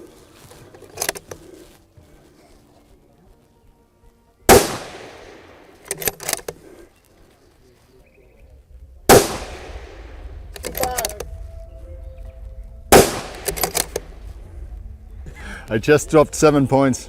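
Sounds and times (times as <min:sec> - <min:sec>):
rifle shots with echo: 0:04.5 - 0:06.5, 0:09.1 - 0:11.3, 0:12.9 - 0:14.3
sharp clicks: 0:04.5 - 0:06.6, 0:10.4 - 0:11.4, 0:13.0 - 0:14.2.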